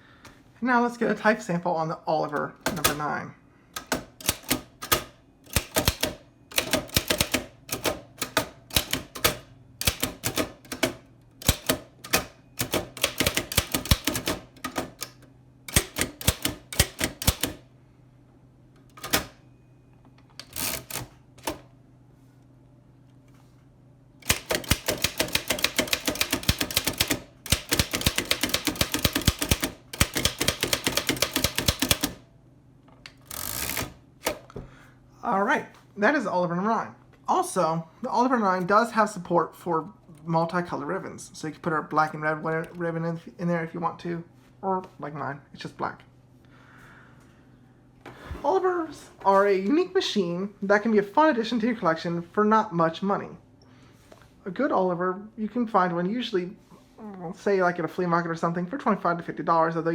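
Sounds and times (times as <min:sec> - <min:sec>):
typewriter keystroke clacks: 0:02.6 - 0:03.1, 0:03.8 - 0:17.6, 0:24.2 - 0:32.2.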